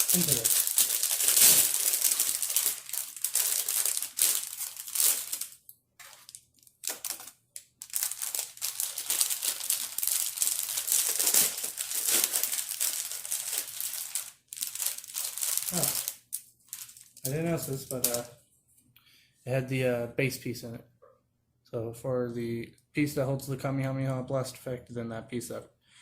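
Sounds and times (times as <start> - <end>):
plastic bags crinkling: 0.0 - 18.3.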